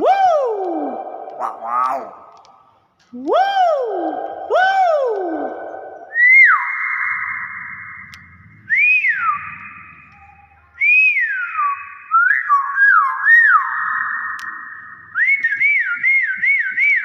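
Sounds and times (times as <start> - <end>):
bird whistling: 5.1 - 17.0.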